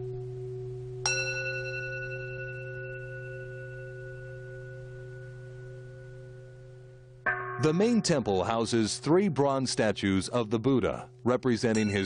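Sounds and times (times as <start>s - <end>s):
steady low hum: 0.0s - 12.0s
metal bell ringing: 1.1s - 6.4s, 7.3s - 8.6s, 11.8s - 12.0s.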